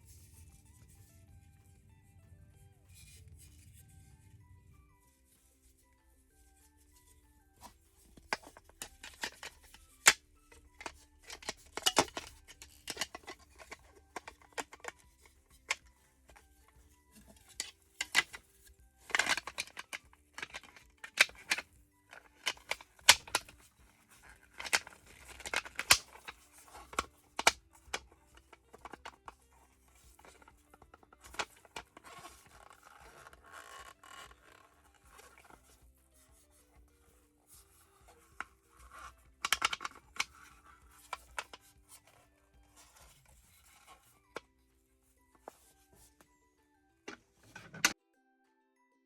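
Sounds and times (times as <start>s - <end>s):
soft background music: 0.0s - 49.0s
plastic packaging clicks and rustles: 7.6s - 42.0s.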